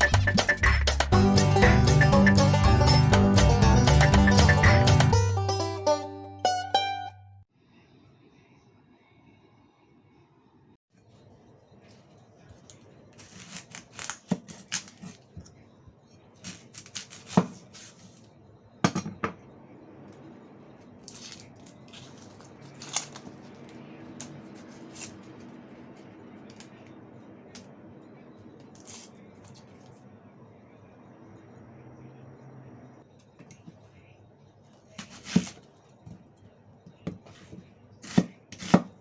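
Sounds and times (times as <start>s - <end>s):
kitchen utensils clicking and knocking: 0.0s - 1.2s
faint steady hum: 7.4s - 39.0s.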